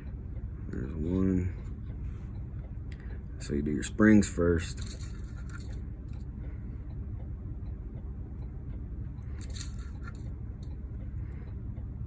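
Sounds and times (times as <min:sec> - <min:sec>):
steady low hum: 0:00.0 - 0:12.0
small metal clicks and scrapes: 0:04.6 - 0:06.3, 0:09.2 - 0:10.8.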